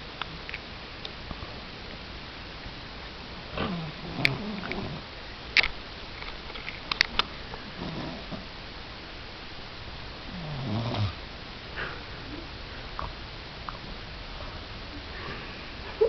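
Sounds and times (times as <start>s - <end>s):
person snoring: 3.6s - 5.0s, 7.8s - 8.3s, 10.3s - 11.2s.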